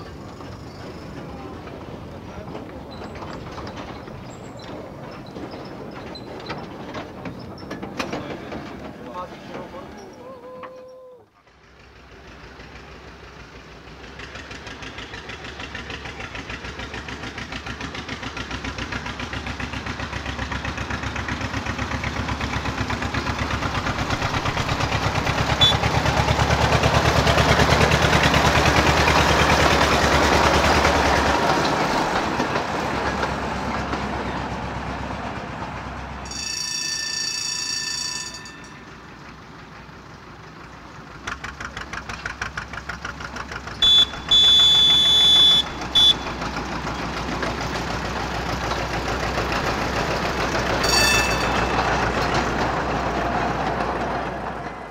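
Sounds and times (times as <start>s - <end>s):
train passing: 0.0s - 54.9s
shrill train whistle: 25.6s - 25.9s, 43.8s - 46.4s, 50.8s - 52.0s
short tone: 43.8s - 46.4s, 50.8s - 52.3s.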